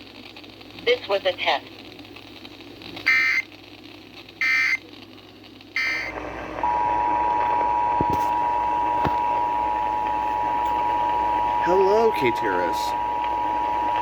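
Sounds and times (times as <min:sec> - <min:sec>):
screeching data bursts: 0:03.1 - 0:03.5, 0:04.4 - 0:04.8, 0:05.8 - 0:06.2, 0:10.3 - 0:14.0.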